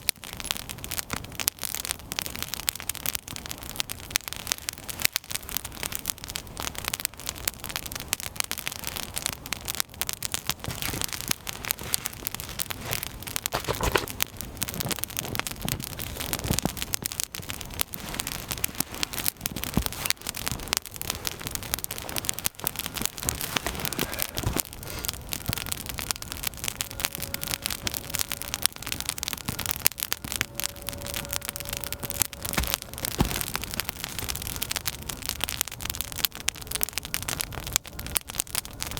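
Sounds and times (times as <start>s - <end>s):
campfire crackling and popping: 0.0s - 38.9s
faint thin whistle: 25.0s - 33.5s.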